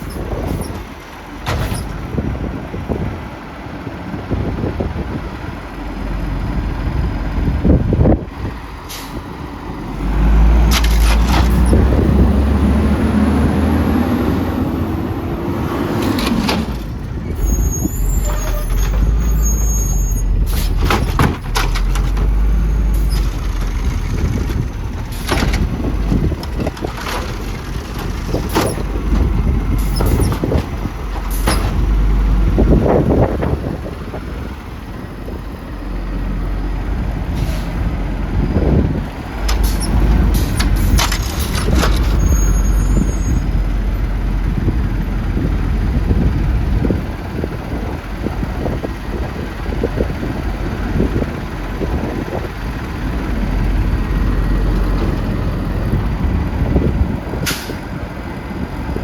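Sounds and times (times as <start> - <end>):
wind buffeting microphone: 1.8 - 16.0, 20.2 - 59.0
garbage truck engine revving: 4.6 - 59.0
air brake hissing: 8.8 - 9.4, 37.3 - 37.8, 57.4 - 57.9
metal clanks and bangs: 20.2 - 32.0.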